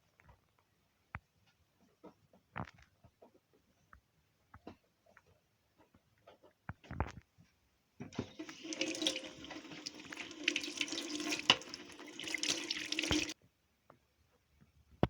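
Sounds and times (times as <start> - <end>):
tap water running into sink: 8.2 - 13.4.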